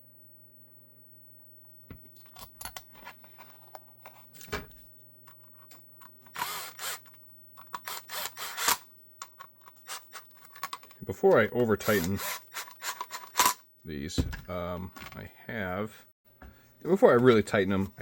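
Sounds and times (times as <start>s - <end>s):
power driver running: 6.3s - 8.8s, 11.3s - 13.6s.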